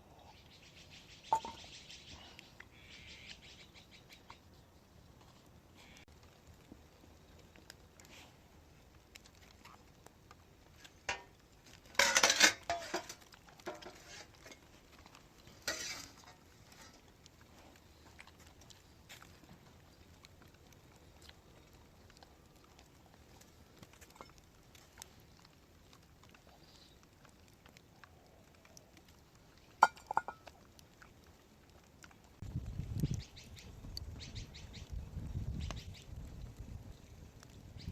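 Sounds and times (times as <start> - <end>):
hard objects clattering together: 11.1 - 17.0, 29.8 - 30.5.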